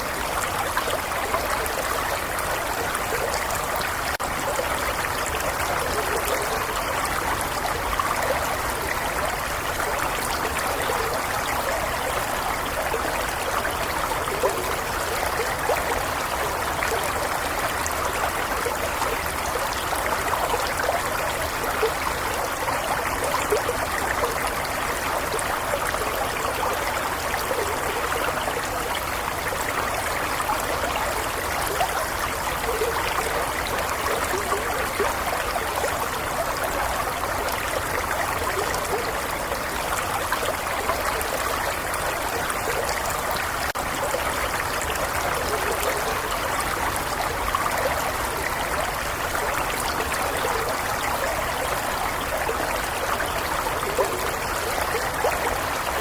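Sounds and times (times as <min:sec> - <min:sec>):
stream trickling over stones: 0:00.0 - 0:56.0.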